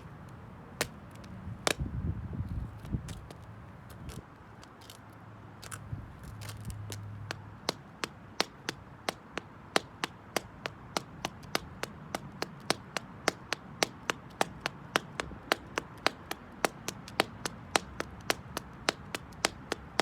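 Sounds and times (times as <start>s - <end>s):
high heels clicking on concrete: 0.0s - 1.9s, 2.5s - 20.0s.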